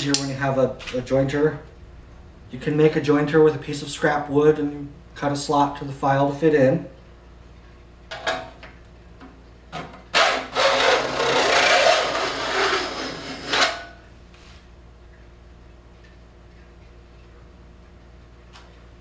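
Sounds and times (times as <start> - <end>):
file scraping saw teeth: 10.2 - 14.0.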